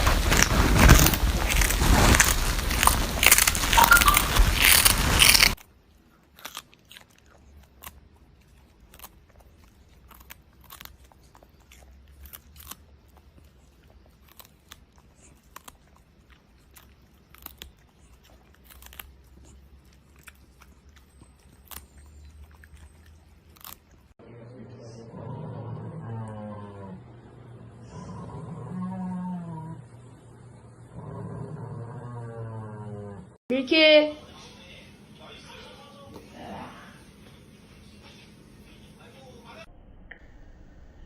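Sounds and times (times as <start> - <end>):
loud crackling noise: 0.0 - 5.6
animal chewing and crunching food: 0.0 - 24.2.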